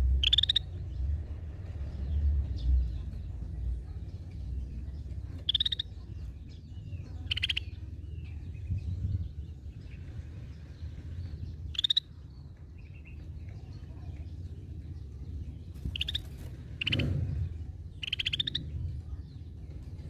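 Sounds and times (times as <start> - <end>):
soft bird chirps: 0.0 - 20.0
steady low hum: 0.0 - 20.0
bulbul rasping calls: 0.2 - 0.7, 5.4 - 6.1, 7.2 - 7.8, 11.7 - 12.1, 15.8 - 17.1, 18.0 - 18.7.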